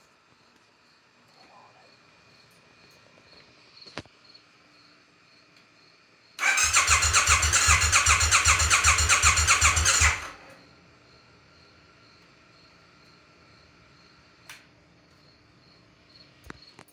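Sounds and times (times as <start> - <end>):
motorcycle engine cranking on starter: 6.4 - 10.6.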